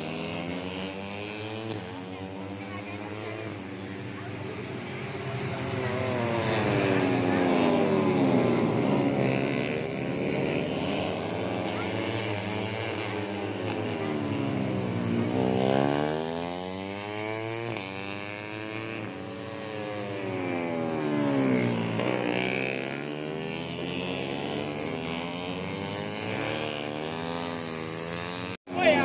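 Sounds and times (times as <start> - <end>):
racing motorcycles passing: 0.0 - 29.0.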